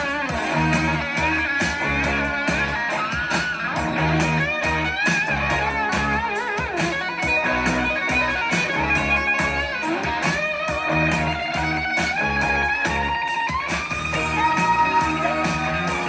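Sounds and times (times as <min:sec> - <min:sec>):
bass: 0:00.0 - 0:16.0
electric guitar bending notes: 0:00.0 - 0:16.0
rock blues music: 0:00.0 - 0:16.0
steady drum beat: 0:00.0 - 0:16.0.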